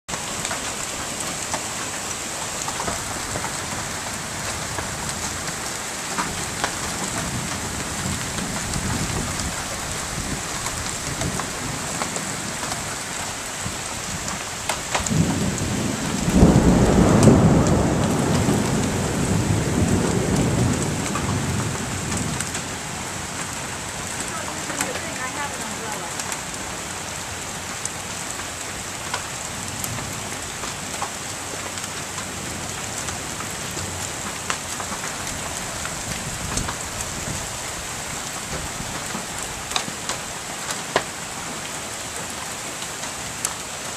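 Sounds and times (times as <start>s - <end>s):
hail hitting: 0.1s - 43.9s
heavy rain: 0.1s - 43.9s
thunder rolling: 15.0s - 22.7s.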